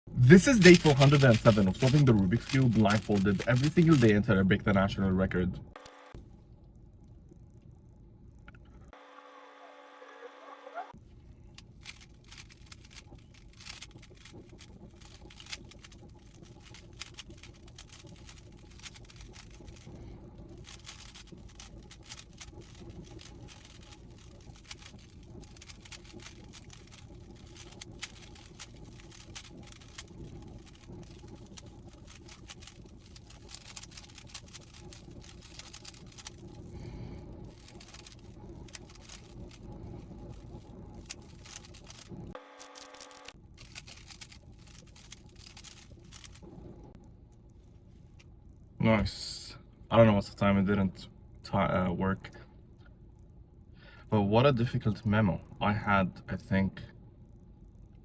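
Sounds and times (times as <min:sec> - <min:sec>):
low steady hum: 0:00.1 - 0:09.4, 0:10.4 - 0:58.0
puzzle cube plastic clicks: 0:00.4 - 0:04.3, 0:11.6 - 0:19.9, 0:20.6 - 0:36.6, 0:37.5 - 0:46.4.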